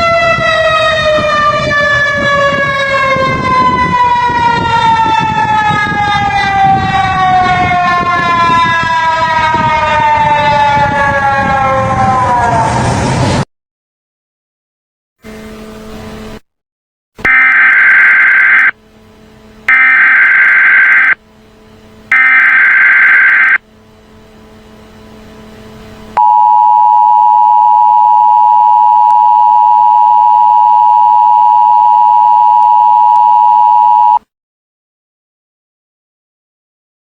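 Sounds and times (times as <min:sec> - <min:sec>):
digital header data bursts: 0:17.3 - 0:18.7, 0:19.7 - 0:21.2, 0:22.1 - 0:23.6
two-tone attention signal: 0:17.3 - 0:18.7, 0:19.7 - 0:21.2, 0:22.1 - 0:23.6, 0:26.2 - 0:34.2.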